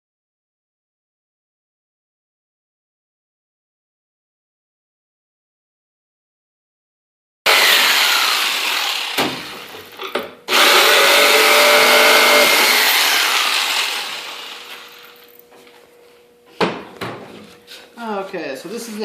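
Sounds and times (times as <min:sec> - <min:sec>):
electric power saw cutting plywood: 0:07.5 - 0:15.2.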